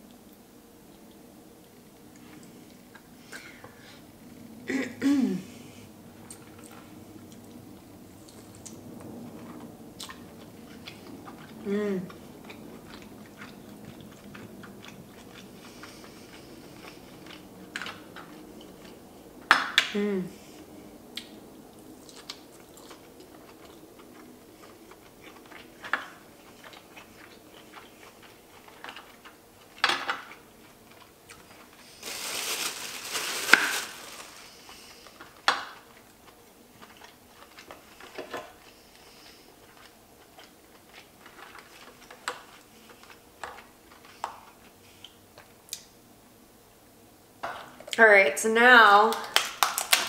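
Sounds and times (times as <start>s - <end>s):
person chewing: 6.2s - 19.1s, 21.1s - 45.9s.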